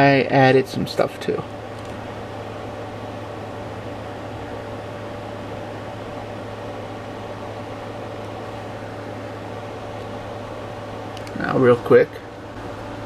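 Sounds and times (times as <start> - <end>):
appliance hum with hiss: 0.0 - 13.0.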